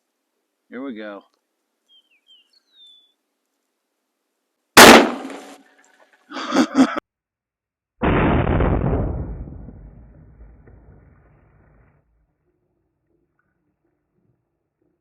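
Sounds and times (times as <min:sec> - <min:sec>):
rifle shot: 0:04.8 - 0:05.6, 0:08.0 - 0:11.2
dull boom: 0:08.0 - 0:12.0.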